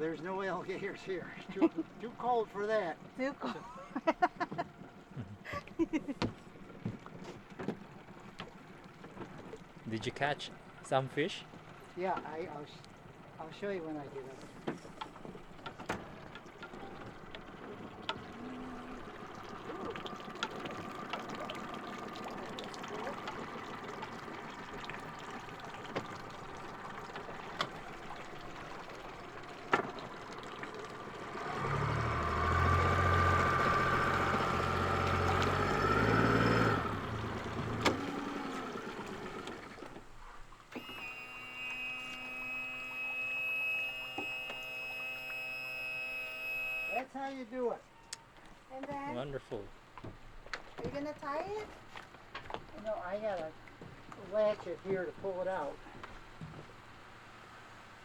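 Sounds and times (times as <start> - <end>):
motor running: 0.0 - 47.0
high-pitched hum: 40.8 - 47.0.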